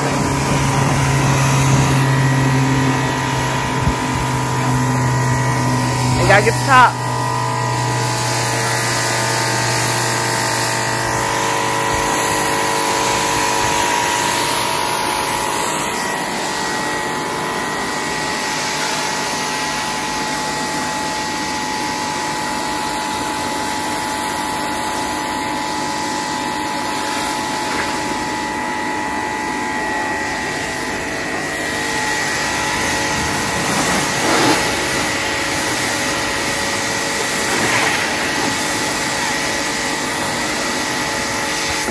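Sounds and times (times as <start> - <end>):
pressure washer motor whining: 0.0 - 41.9
water jet hissing: 30.3 - 41.9.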